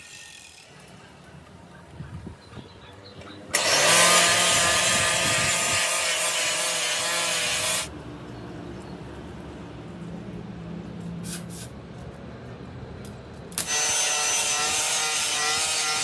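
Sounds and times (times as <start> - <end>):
power tool whining and rasping: 0.0 - 1.0, 3.5 - 7.9, 13.6 - 16.0.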